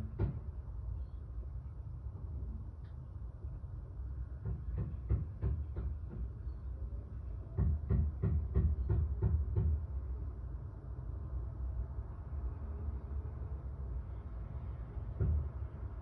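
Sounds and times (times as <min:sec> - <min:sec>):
sharp knocks: 0:04.4 - 0:06.3, 0:07.6 - 0:09.8.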